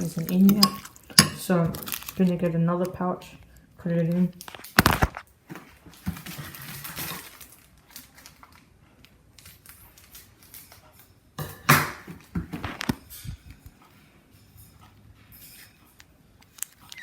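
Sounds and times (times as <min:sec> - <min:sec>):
foil sachet crinkling: 0:00.0 - 0:03.1, 0:06.2 - 0:08.7.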